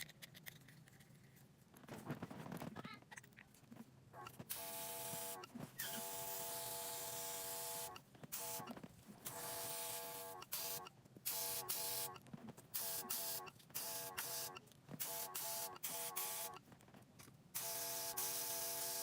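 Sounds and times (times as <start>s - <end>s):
compressor motor whining: 4.2s - 12.2s
airbrush hissing: 4.5s - 8.7s, 9.3s - 12.1s, 12.8s - 16.6s, 17.6s - 19.0s.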